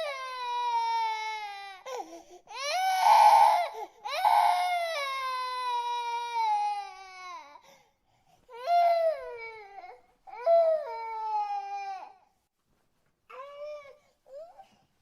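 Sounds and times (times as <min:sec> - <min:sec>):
infant crying: 0:00.0 - 0:07.7, 0:08.5 - 0:12.2.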